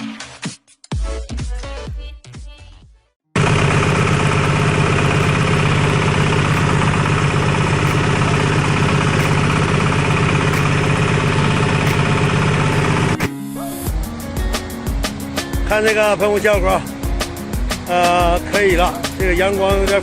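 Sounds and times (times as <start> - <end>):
music: 0.0 - 3.2, 11.5 - 20.0
sprayer engine running: 3.4 - 13.3, 13.9 - 20.0.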